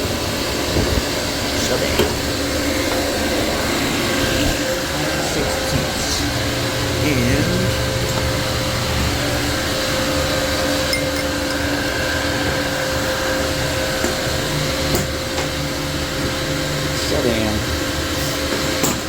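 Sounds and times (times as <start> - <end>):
machine humming: 0.0 - 19.0
steady tone: 2.5 - 14.9.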